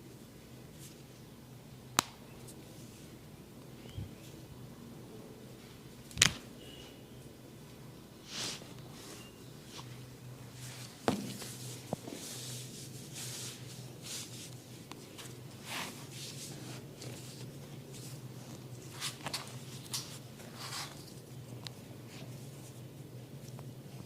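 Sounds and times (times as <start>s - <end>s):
hands rubbing skin and hair: 8.3s - 21.2s.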